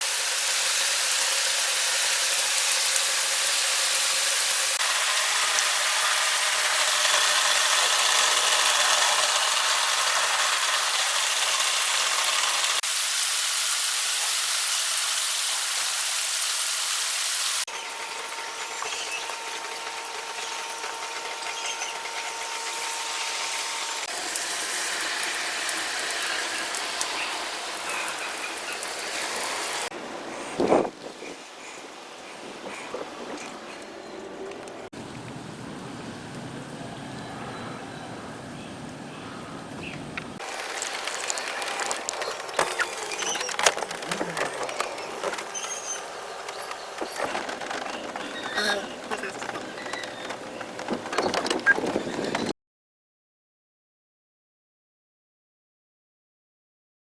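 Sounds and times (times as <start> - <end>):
heavy rain hissing: 22.4 - 34.1, 40.4 - 52.5.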